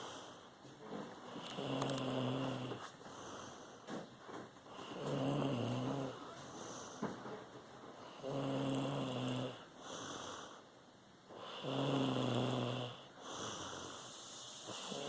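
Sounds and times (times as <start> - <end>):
soft hissy breath: 0.0 - 12.0, 12.8 - 15.0
deep low snoring: 1.4 - 2.8, 4.8 - 6.2, 8.2 - 9.7, 11.4 - 15.0.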